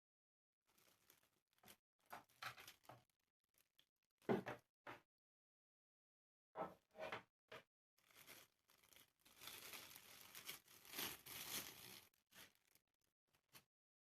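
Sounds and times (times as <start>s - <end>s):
packaging torn and crinkled: 8.0s - 12.8s.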